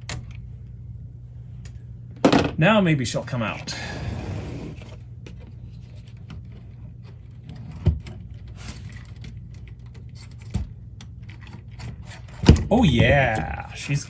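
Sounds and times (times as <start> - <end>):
steady low hum: 0.0 - 14.0
faint clicks and rattles: 5.2 - 12.4.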